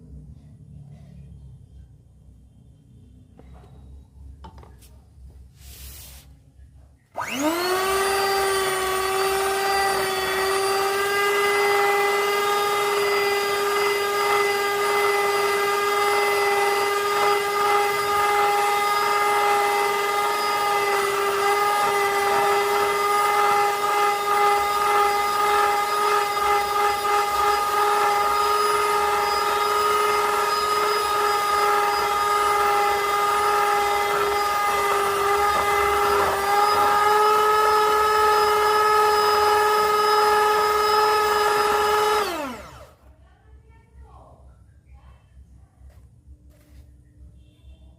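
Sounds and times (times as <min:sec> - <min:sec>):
electric drill mixer whining: 0:07.1 - 0:43.1.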